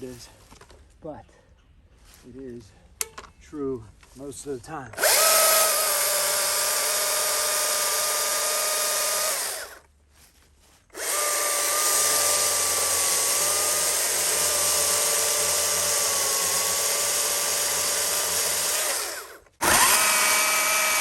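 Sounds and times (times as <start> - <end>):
chainsaw cutting log: 5.0 - 9.9, 10.9 - 21.0.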